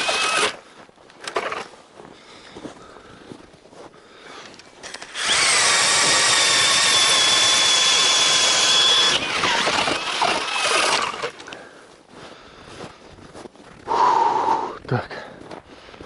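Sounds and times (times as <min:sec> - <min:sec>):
cordless drill whining: 0:00.0 - 0:00.6, 0:04.4 - 0:11.6.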